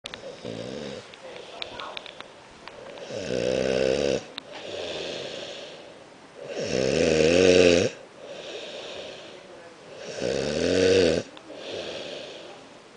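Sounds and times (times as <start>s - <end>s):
man snoring: 0.2s - 1.1s, 3.0s - 12.5s
breathy exhale: 4.5s - 6.0s, 8.2s - 10.1s, 11.5s - 12.8s.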